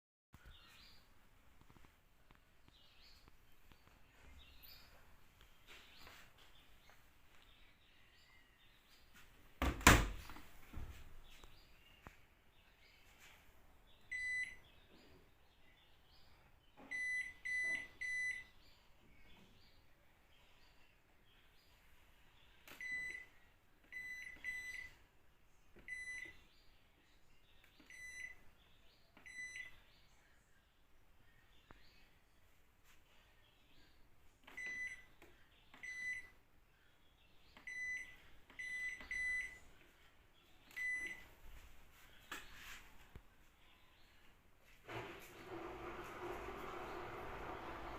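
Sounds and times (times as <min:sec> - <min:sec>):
washing machine beeps: 0:14.1 - 0:14.6, 0:16.8 - 0:18.6, 0:22.7 - 0:25.0, 0:25.8 - 0:26.4, 0:27.8 - 0:28.4, 0:29.2 - 0:29.8, 0:34.5 - 0:35.1, 0:35.7 - 0:36.4, 0:37.6 - 0:39.6, 0:40.7 - 0:41.3.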